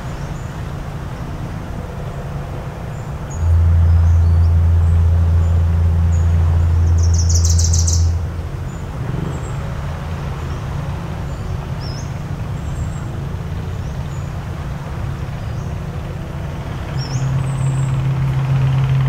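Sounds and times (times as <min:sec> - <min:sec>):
low drone: 0:00.0 - 0:19.0
high bird chirps: 0:06.1 - 0:08.2.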